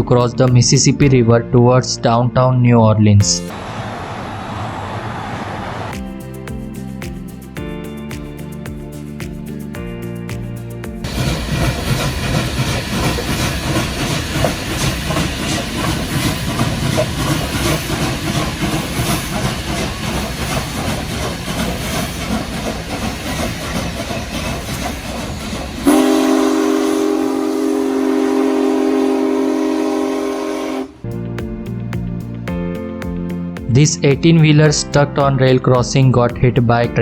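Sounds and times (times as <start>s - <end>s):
steam locomotive rumbling: 11.0s - 31.1s
steam whistle chord: 25.8s - 31.1s.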